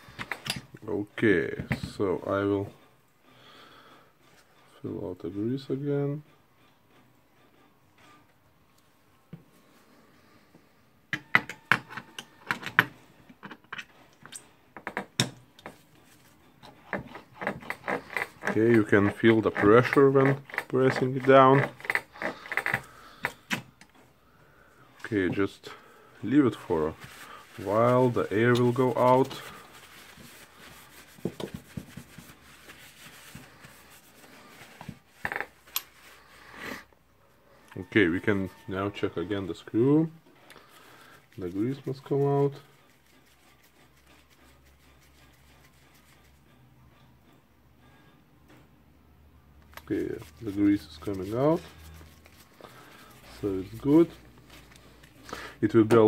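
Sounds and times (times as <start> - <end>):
tool parts knocking and rubbing: 0.1 - 0.8, 11.2 - 24.1, 26.2 - 36.2.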